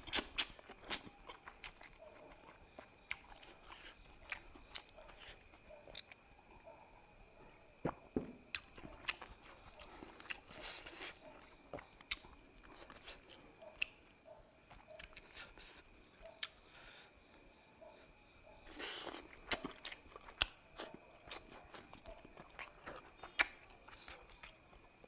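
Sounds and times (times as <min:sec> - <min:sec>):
person chewing and crunching: 0:00.0 - 0:06.2, 0:07.9 - 0:14.0, 0:14.7 - 0:15.8, 0:16.4 - 0:16.6, 0:18.7 - 0:25.0.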